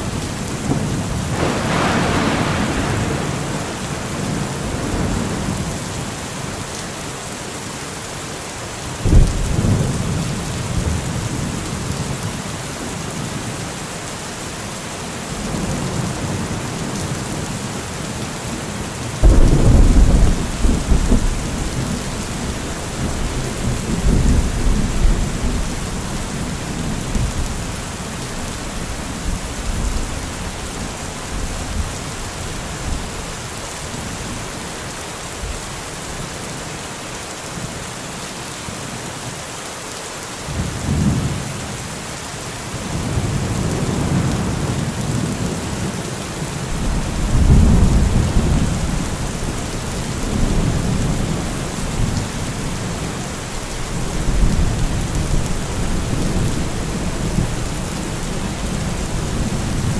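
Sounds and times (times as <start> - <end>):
thunder rumbling: 0.0 - 6.1, 19.2 - 27.8, 46.7 - 59.9
heavy rain hissing: 0.0 - 59.9.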